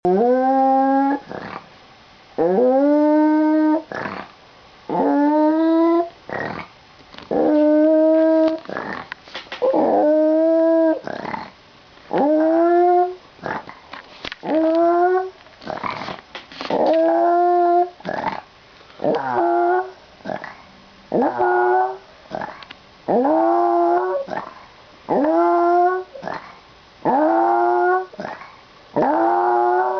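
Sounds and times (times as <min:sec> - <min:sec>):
dog howling: 0:02.4 - 0:03.9, 0:04.9 - 0:06.5, 0:07.3 - 0:09.0, 0:09.6 - 0:11.4, 0:12.1 - 0:13.2, 0:16.7 - 0:18.3, 0:19.0 - 0:20.4, 0:21.2 - 0:22.5, 0:23.1 - 0:24.5, 0:25.1 - 0:26.4, 0:27.1 - 0:28.3, 0:29.0 - 0:29.9.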